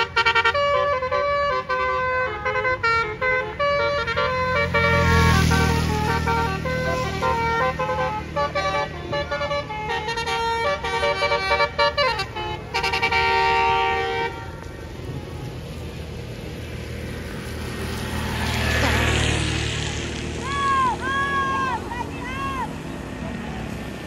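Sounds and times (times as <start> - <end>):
bus air horns playing a tune: 0.0 - 14.9.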